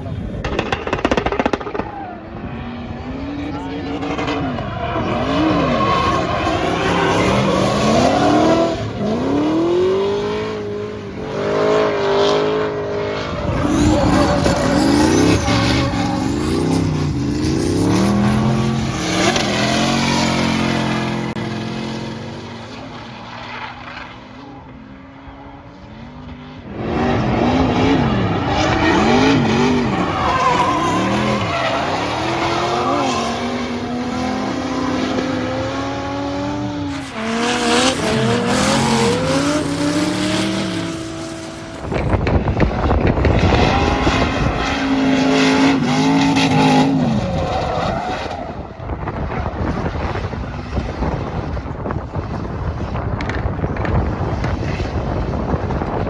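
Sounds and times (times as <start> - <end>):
tires squealing: 1.0 - 24.5, 26.8 - 50.3
car engine revving: 2.8 - 24.2, 26.6 - 49.1.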